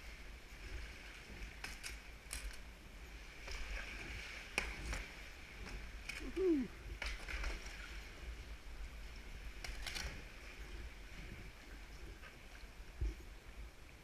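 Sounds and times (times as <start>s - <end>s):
water splashing around kayak: 0.0s - 14.0s.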